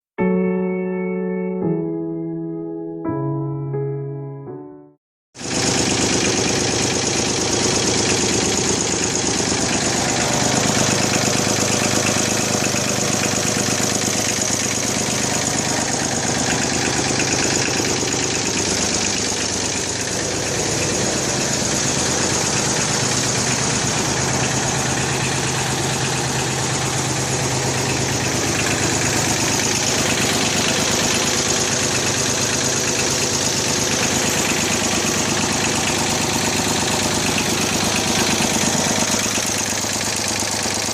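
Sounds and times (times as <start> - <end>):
tractor engine running: 5.4 - 40.9.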